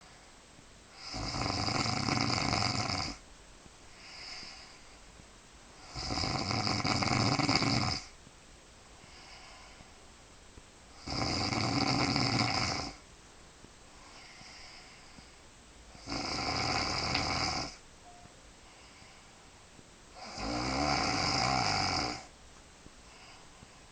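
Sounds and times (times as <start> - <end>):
woman snoring loudly: 1.0 - 3.2, 5.8 - 8.1, 11.0 - 13.0, 16.0 - 17.8, 20.2 - 22.3
faint breath: 3.9 - 5.2, 8.9 - 10.1, 13.9 - 15.5, 18.5 - 19.6, 23.0 - 23.9.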